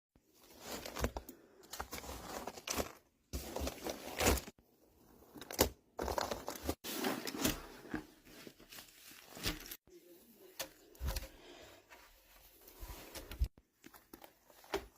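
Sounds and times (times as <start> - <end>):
paper or plastic rustling: 0.4 - 4.6, 5.4 - 9.8.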